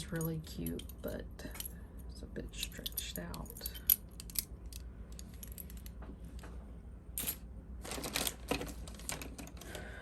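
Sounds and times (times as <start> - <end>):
jewelry clicking and clinking: 0.0 - 6.1.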